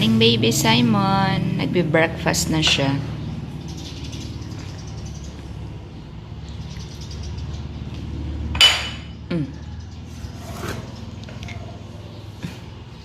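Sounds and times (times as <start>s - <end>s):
tableware clink: 8.6s - 9.1s.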